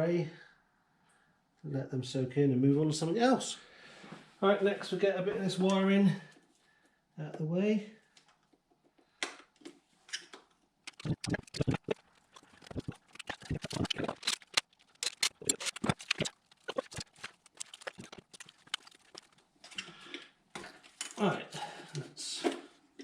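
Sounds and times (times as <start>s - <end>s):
wiring connectors clicking: 9.2s - 19.8s.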